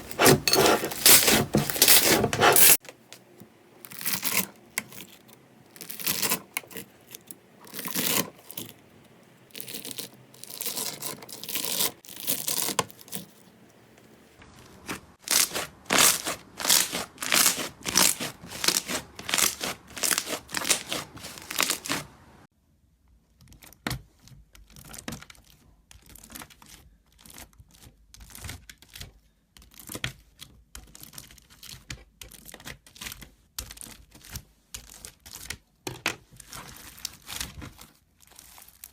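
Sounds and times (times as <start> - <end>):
slime squishing and crackling: 14.7 - 22.2.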